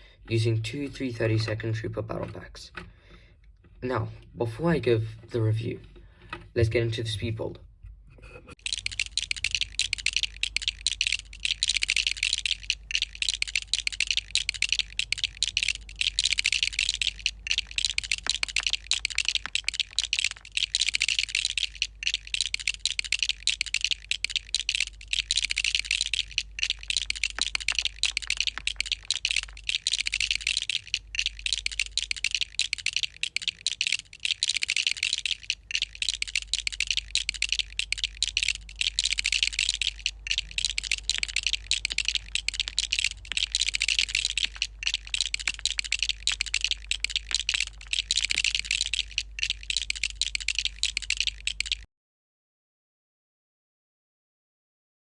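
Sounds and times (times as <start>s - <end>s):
plastic bricks clicking and rattling: 8.6s - 51.9s.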